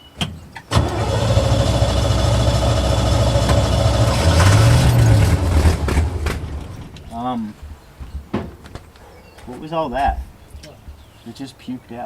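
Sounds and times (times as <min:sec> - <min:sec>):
car engine starting and running: 0:00.7 - 0:07.1.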